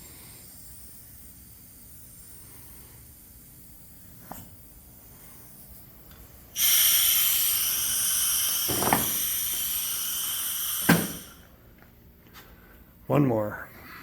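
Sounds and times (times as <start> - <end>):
compressed air hissing: 0.0 - 11.5.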